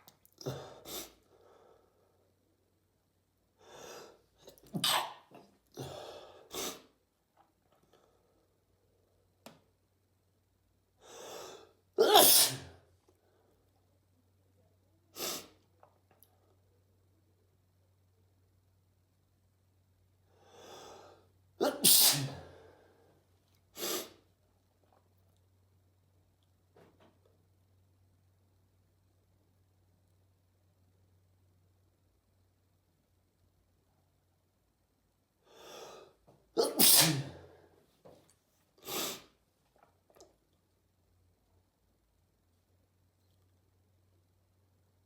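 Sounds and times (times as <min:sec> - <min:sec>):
person sneezing: 0:00.4 - 0:01.2, 0:03.7 - 0:06.9, 0:11.2 - 0:12.8, 0:15.1 - 0:15.6, 0:21.6 - 0:22.6, 0:36.6 - 0:37.6, 0:38.8 - 0:39.4.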